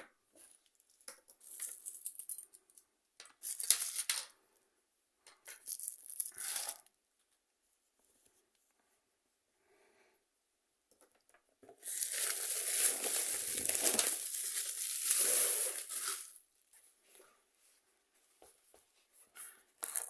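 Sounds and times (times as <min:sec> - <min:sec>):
plastic wrap crinkling: 0:11.8 - 0:16.4.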